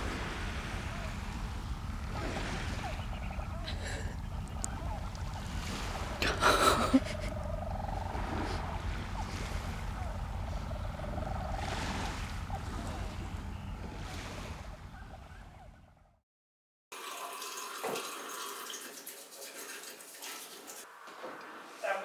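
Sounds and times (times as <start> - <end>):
purring bird call over loudspeakers: 0.0 - 16.0
wind buffeting microphone: 0.0 - 16.0.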